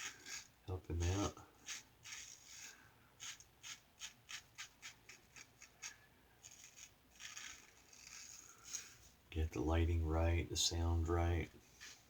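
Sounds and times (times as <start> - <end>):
razor scraping stubble: 0.0 - 9.1, 11.5 - 12.0.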